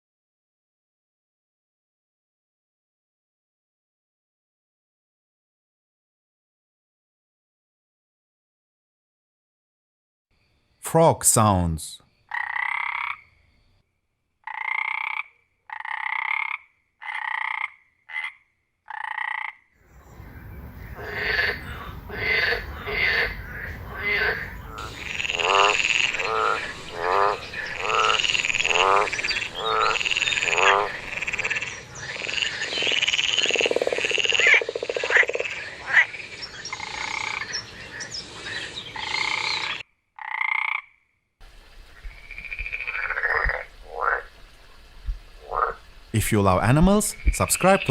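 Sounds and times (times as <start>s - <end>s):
frogs croaking: 10.4s - 47.9s.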